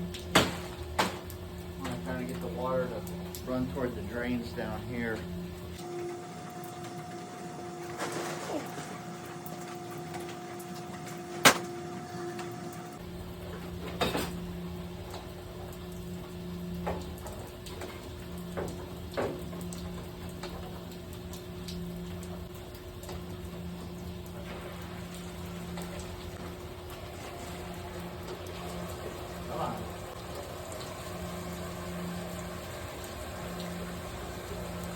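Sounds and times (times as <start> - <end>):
mechanical room hum: 0.0 - 34.9
hot water spraying: 24.3 - 34.9.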